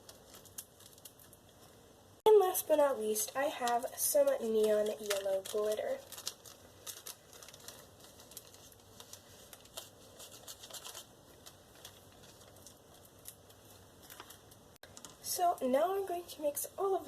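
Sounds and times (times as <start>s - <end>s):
glitter pattering into glue: 2.6s - 15.4s.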